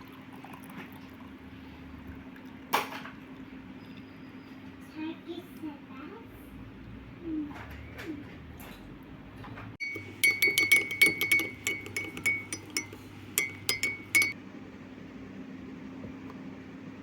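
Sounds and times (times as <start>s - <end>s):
metal spoon clinking against cup: 9.8s - 14.4s.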